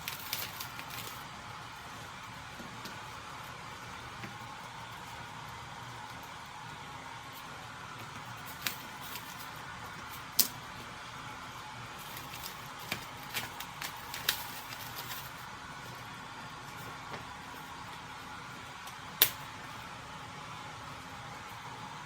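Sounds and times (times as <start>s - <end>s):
utensils clicking and tapping: 12.0s - 15.4s.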